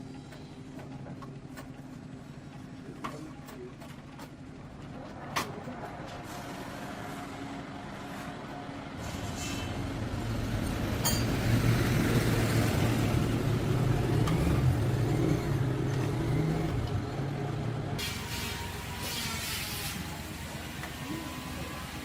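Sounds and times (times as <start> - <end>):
engine humming: 9.4 - 19.1.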